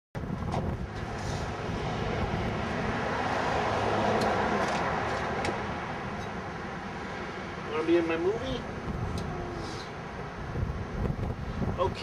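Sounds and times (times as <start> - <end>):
distant engine noise: 0.2 - 12.0.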